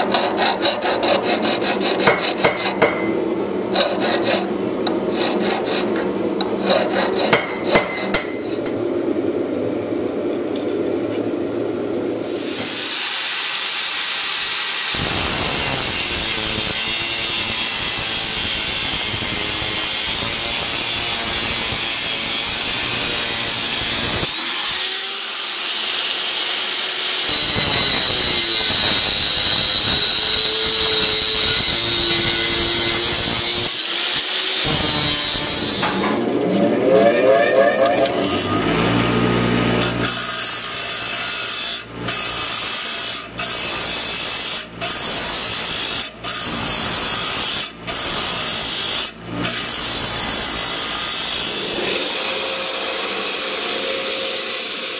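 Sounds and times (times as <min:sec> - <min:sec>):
steel grinding hiss: 0:00.0 - 0:08.8, 0:12.2 - 0:38.8
grinder motor whining: 0:34.5 - 0:40.1
low rasping: 0:34.6 - 0:40.1.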